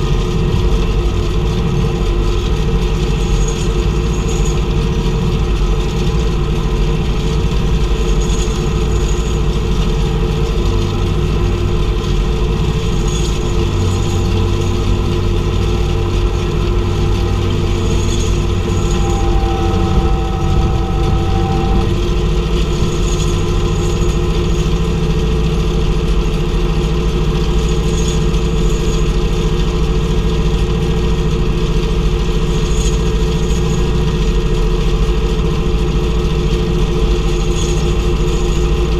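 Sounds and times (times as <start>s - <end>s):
baler machinery: 0.0s - 38.9s
tractor engine running: 0.0s - 38.9s.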